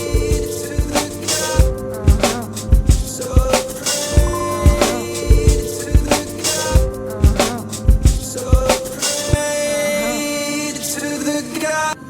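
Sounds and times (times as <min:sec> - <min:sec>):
held melodic notes: 0:00.0 - 0:10.9
heavy kick drum: 0:01.6 - 0:03.6, 0:04.2 - 0:06.2, 0:06.8 - 0:08.8.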